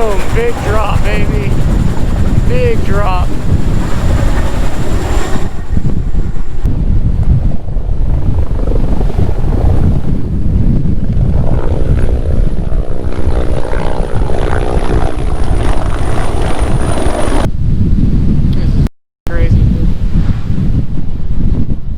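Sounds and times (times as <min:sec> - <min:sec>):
helicopter engine and rotor: 0:00.0 - 0:17.5
high turbine whine: 0:00.0 - 0:20.0
wind rumble on microphone: 0:00.0 - 0:21.9.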